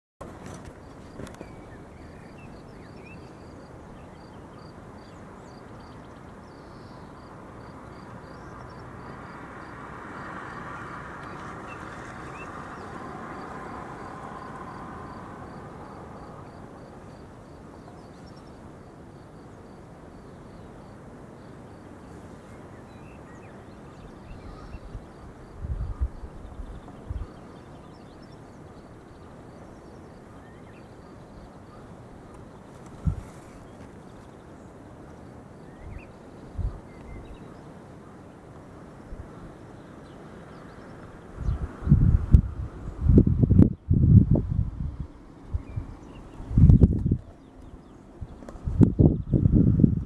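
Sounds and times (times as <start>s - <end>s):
broad swell of noise: 8.5s - 18.0s.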